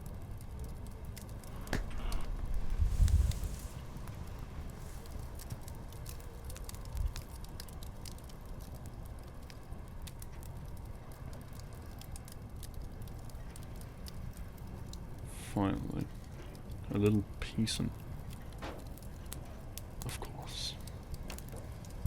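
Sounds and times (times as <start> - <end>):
wood fire crackling: 0.0 - 22.0
low rumble: 1.4 - 6.0.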